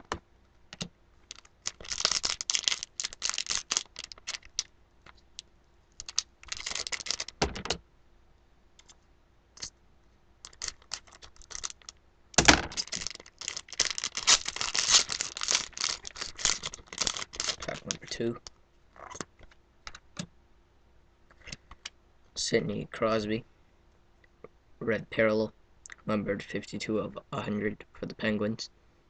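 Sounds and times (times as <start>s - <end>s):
foil wrapper crinkling: 0.8s - 5.2s, 6.0s - 7.4s, 10.4s - 11.9s, 12.6s - 18.2s.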